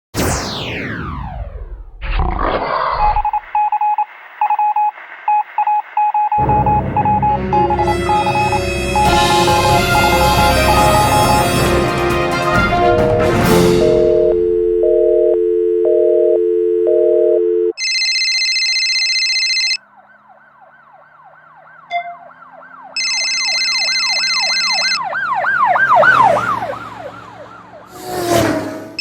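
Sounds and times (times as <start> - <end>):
warbling siren-like sweep: 0.2 - 2.4, 6.4 - 11.8, 19.9 - 28.1
high beeping tones: 3.1 - 11.6, 13.8 - 19.8, 23.0 - 25.0
steady low tone: 6.4 - 11.4, 13.7 - 17.7.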